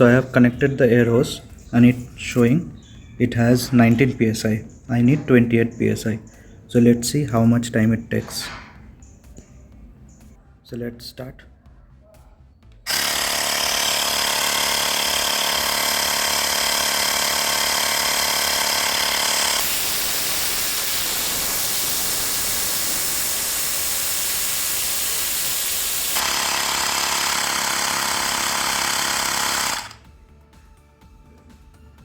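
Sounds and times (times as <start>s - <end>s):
air compressor buzzing: 12.9s - 30.1s.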